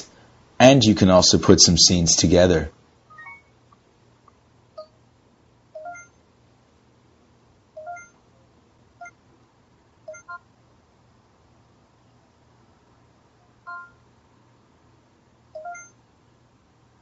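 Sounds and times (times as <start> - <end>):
faint low hum: 0.0 - 17.0
short electronic beeps: 3.1 - 3.5, 5.8 - 6.2, 7.8 - 8.2, 10.1 - 10.4, 15.6 - 16.0.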